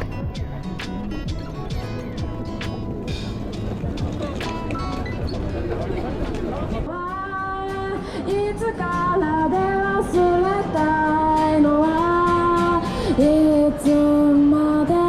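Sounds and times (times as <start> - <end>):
woman singing slow melody: 6.9 - 15.0.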